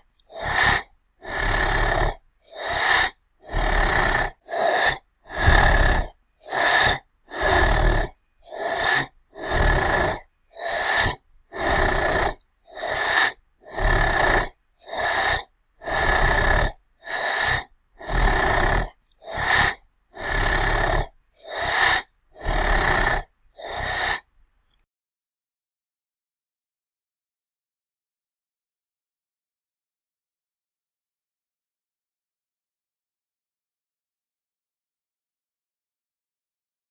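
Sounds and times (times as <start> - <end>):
monster breathing: 0.0 - 24.3.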